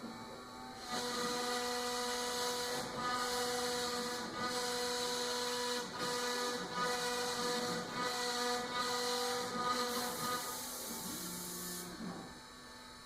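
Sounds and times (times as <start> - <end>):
router spindle whine: 0.0 - 13.0.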